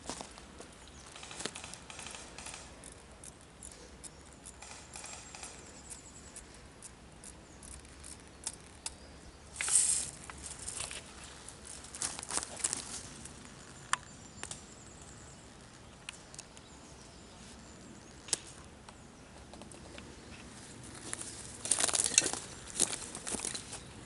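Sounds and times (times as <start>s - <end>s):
sharp clicks: 1.1s - 9.0s
rustling in leaves and undergrowth: 9.4s - 18.6s, 20.0s - 24.0s.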